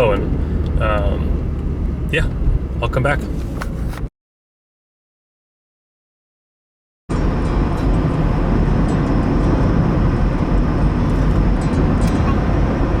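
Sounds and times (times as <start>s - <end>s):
car road noise: 0.0s - 4.1s, 7.1s - 13.0s.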